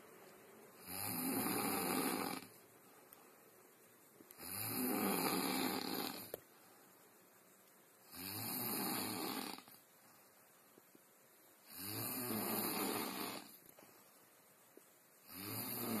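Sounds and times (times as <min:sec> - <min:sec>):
person snoring: 0:00.8 - 0:02.6, 0:04.4 - 0:06.4, 0:08.0 - 0:09.8, 0:11.6 - 0:13.6, 0:15.2 - 0:16.0.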